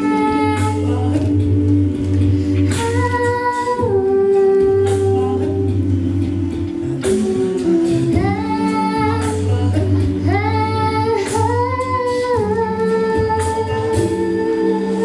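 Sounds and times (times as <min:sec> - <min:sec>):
vocal group singing in harmony: 0:00.0 - 0:15.0
woman singing long notes: 0:06.9 - 0:15.0.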